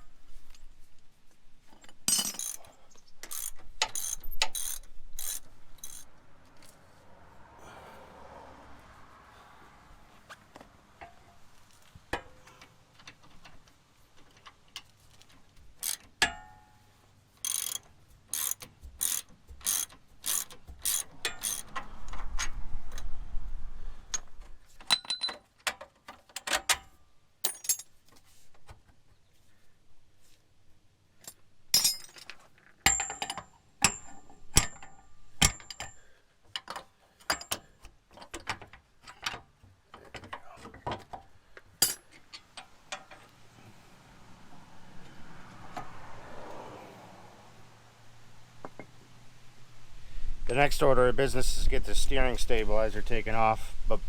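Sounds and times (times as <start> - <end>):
metal tool clinks: 1.9 - 6.0, 24.9 - 25.4, 31.8 - 36.0, 41.8 - 42.2
ratchet wrench clicking: 2.1 - 6.1, 15.8 - 16.4, 17.4 - 21.8.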